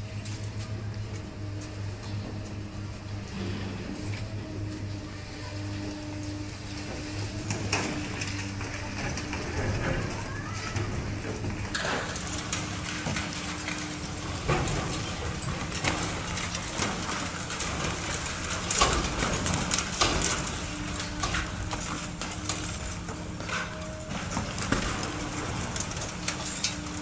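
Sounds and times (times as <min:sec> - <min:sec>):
heavy machinery engine hum: 0:00.0 - 0:27.0
knocks and clatter: 0:06.6 - 0:27.0.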